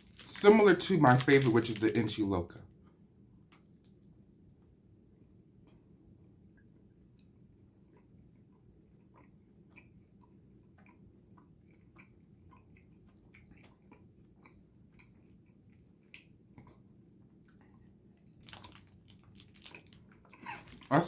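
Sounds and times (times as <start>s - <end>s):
chewing gummy candy: 0.0s - 3.0s, 7.2s - 21.0s.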